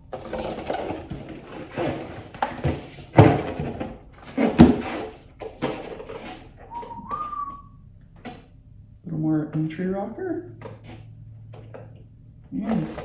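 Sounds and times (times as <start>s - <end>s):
surfboard knocks and thumps: 0.0s - 7.4s.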